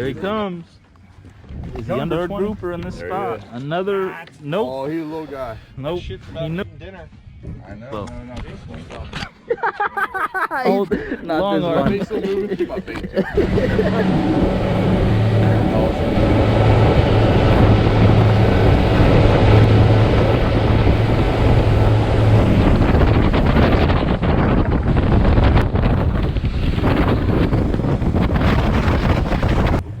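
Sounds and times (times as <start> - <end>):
wind gusting across microphone: 12.9 - 30.0
boat engine humming: 13.0 - 24.2, 24.8 - 29.8.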